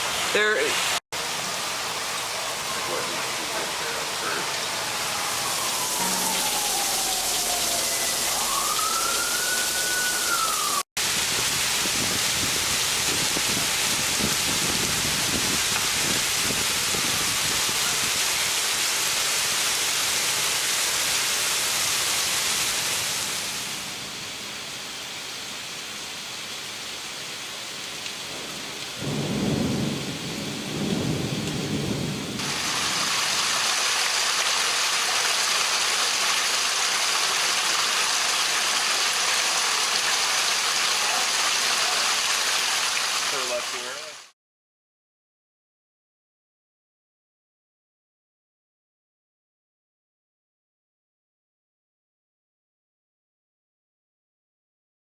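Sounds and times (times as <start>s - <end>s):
heavy rain: 0.0s - 44.3s
rising and falling tone: 4.8s - 10.8s.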